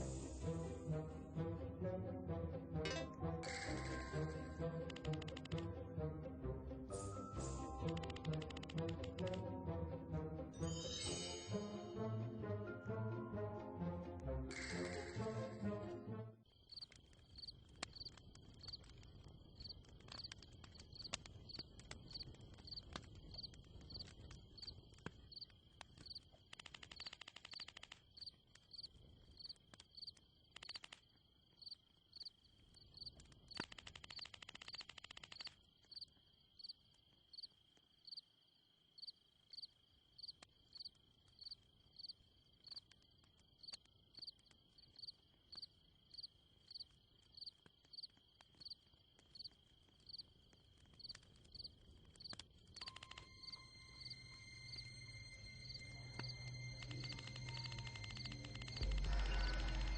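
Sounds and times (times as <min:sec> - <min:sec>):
insect high trill: 0:52.8 - 0:59.9
short high insect chirp: 0:52.8 - 0:59.9.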